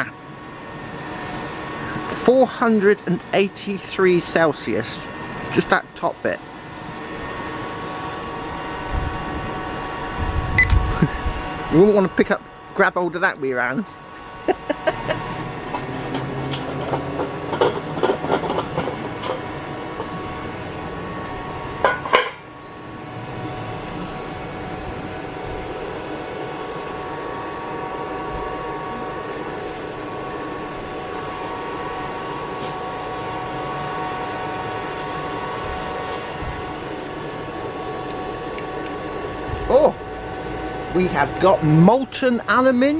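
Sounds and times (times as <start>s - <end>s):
faint steady whine: 0.0s - 42.9s
furnace rushing noise: 15.2s - 22.5s
loud clatter: 15.6s - 20.0s.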